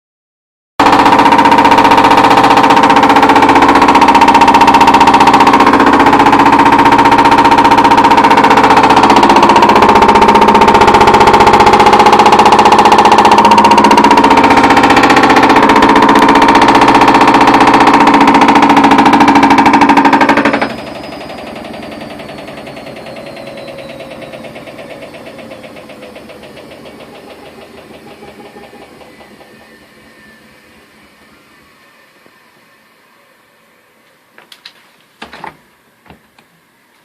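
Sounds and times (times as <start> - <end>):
washing machine drum knocking: 0.8 - 29.6
drum spinning down with whine: 0.8 - 34.0.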